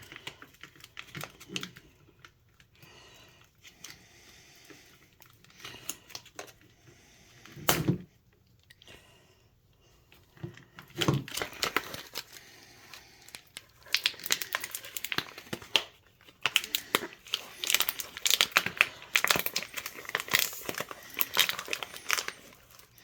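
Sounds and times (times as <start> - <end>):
plastic packaging crinkling: 0.0 - 4.0, 10.2 - 23.0.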